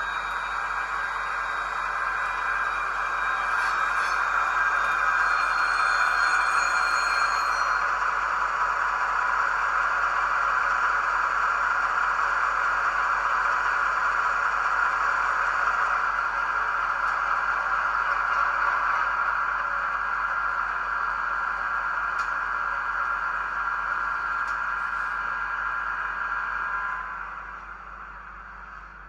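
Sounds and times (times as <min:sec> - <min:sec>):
model locomotive running sound: 0:00.0 - 0:29.0.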